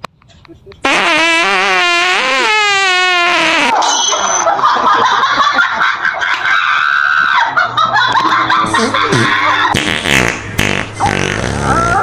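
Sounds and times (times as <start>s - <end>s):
laughter and voices: 0.3s - 0.8s, 3.7s - 9.8s
squeaky fart sound effect: 0.8s - 4.4s, 9.1s - 12.0s.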